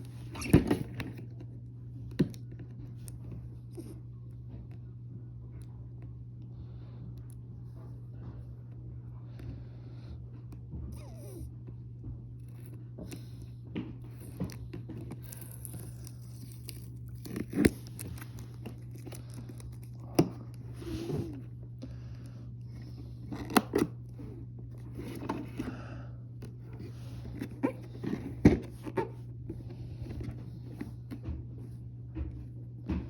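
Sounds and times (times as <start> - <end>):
steady low hum: 0.0 - 33.0
packaging tearing and crinkling: 14.5 - 20.0.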